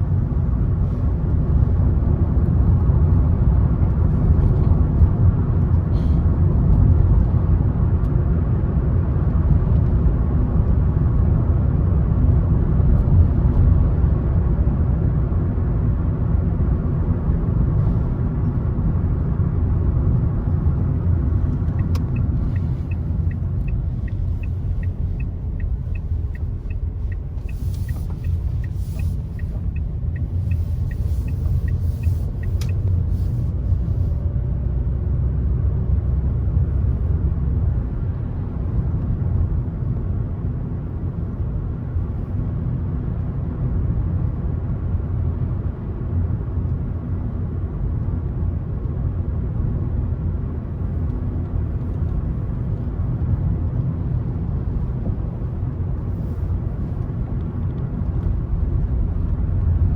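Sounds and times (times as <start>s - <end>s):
tyre and engine rumble: 17.3s - 39.2s
light regular ticking: 21.4s - 33.7s.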